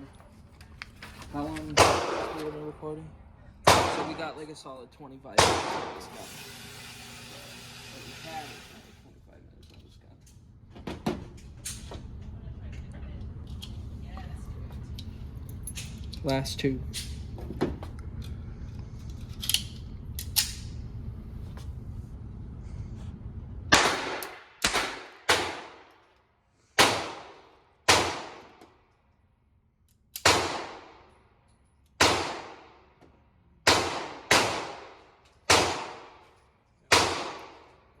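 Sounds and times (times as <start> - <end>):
pistol shots with ringing echo: 1.8 - 2.6, 3.6 - 4.4, 5.4 - 6.2, 23.7 - 25.9, 26.8 - 28.5, 30.2 - 31.1, 32.0 - 32.8, 33.7 - 36.2, 36.9 - 37.7.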